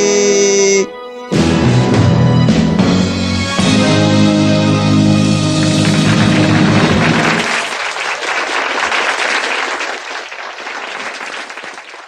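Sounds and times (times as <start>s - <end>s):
backing music chord: 0.0s - 7.4s
audience applause: 4.8s - 12.0s.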